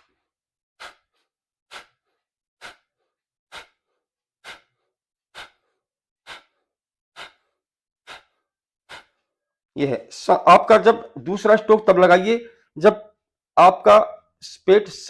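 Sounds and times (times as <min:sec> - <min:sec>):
man forceful nasal exhalations: 0:00.0 - 0:09.3.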